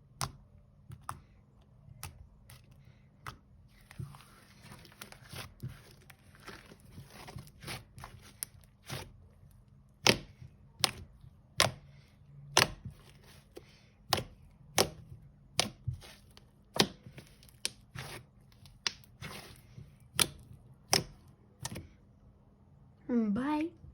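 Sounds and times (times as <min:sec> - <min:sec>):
slime crackling and clicking: 0:10.0 - 0:11.8, 0:14.1 - 0:21.8.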